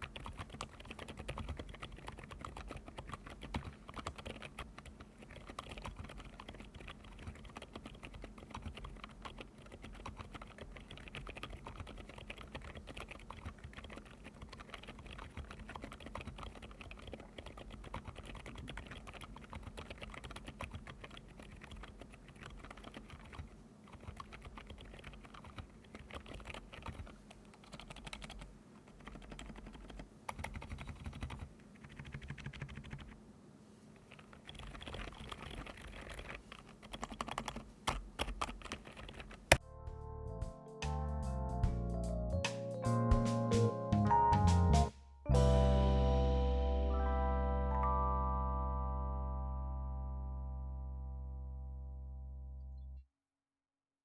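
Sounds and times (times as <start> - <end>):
soft keyboard typing: 0.0 - 33.2, 34.0 - 39.7.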